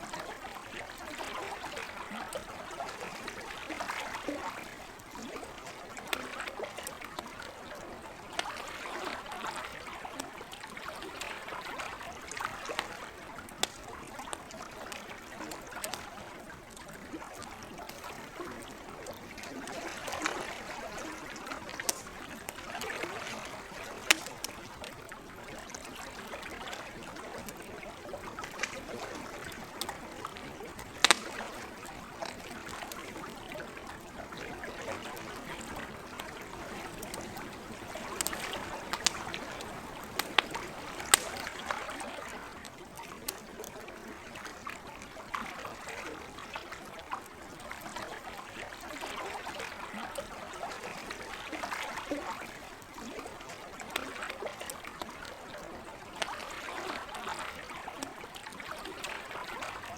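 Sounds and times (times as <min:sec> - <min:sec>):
lake water lapping: 0:00.0 - 0:59.9
campfire crackling and popping: 0:00.1 - 0:07.4, 0:08.1 - 0:44.9.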